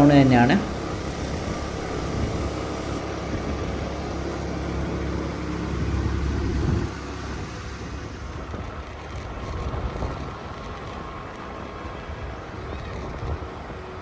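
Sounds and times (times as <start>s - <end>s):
low wind rumble: 0.0s - 3.0s
motorcycle engine running: 0.0s - 3.0s.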